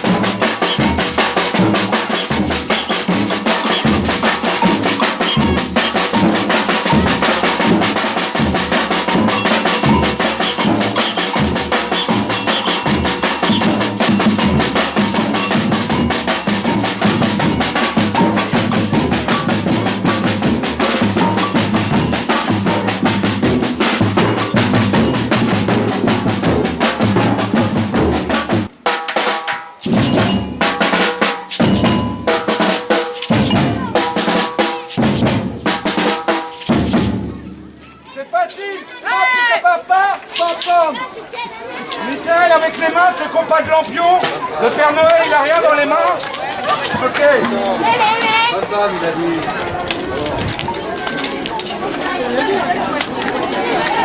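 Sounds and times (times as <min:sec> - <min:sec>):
samba percussion ensemble: 0:00.0 - 0:38.2, 0:40.3 - 0:41.4, 0:42.2 - 0:51.1.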